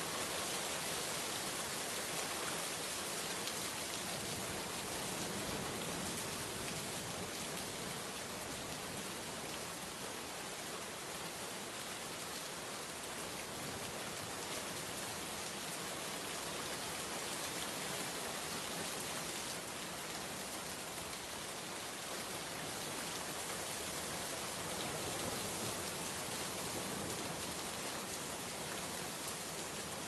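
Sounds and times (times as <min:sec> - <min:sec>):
rain falling: 0:00.0 - 0:30.0.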